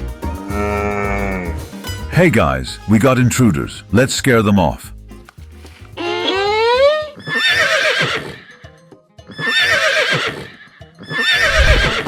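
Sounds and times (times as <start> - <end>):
background music: 0.0 - 12.0
horse whinnying: 6.0 - 8.6, 9.3 - 12.0.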